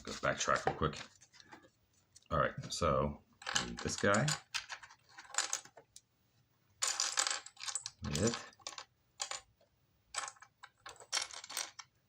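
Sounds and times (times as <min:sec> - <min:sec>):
plastic bricks clicking and clattering: 0:06.8 - 0:09.4, 0:10.2 - 0:12.0.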